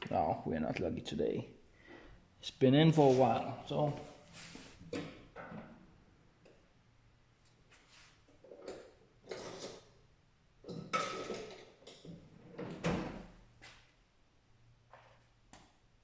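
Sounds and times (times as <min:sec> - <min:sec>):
tools knocking and scraping metal: 0:10.7 - 0:12.1.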